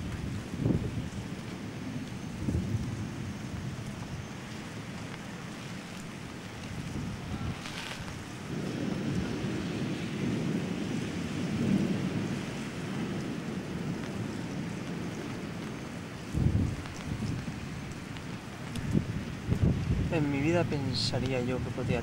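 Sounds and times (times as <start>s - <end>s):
thunder rumbling: 0.0s - 22.0s
torrential rain: 0.0s - 22.0s
sharp thunder clap: 8.5s - 14.0s.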